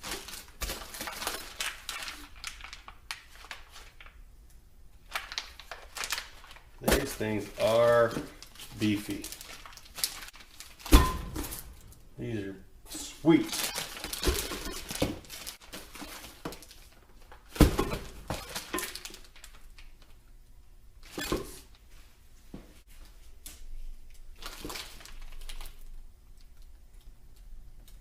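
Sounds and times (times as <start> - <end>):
packaging rustling: 0.0 - 4.2, 5.0 - 12.0, 13.3 - 17.6, 18.2 - 20.2, 24.4 - 25.9.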